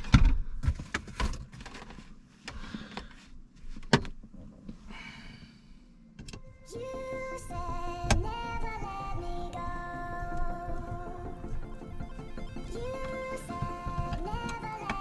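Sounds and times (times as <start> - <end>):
car interior parts clicking: 0.0 - 4.9, 6.1 - 15.0.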